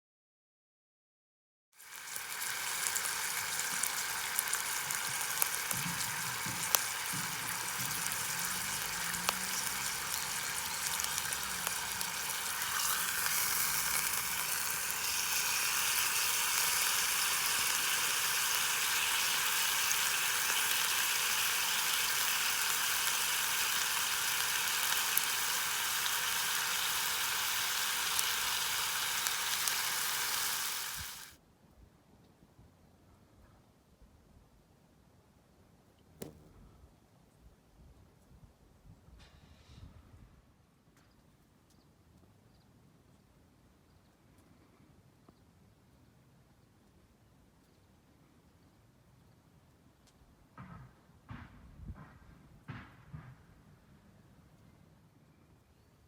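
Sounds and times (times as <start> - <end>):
food sizzling in a pan: 1.8 - 31.4.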